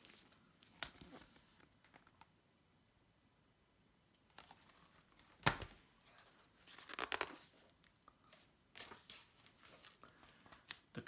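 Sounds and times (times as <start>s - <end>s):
paper crinkling and rustling: 4.3s - 10.7s.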